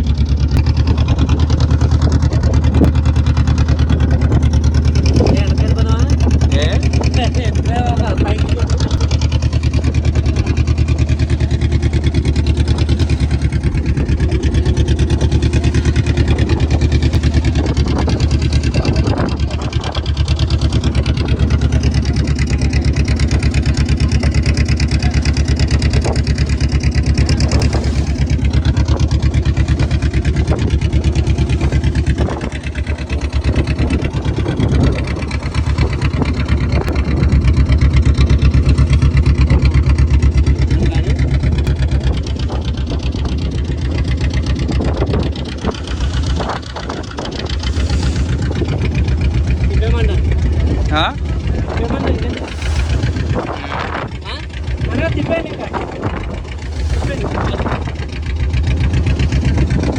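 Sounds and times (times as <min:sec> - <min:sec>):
boat engine chugging: 0:00.0 - 0:59.9.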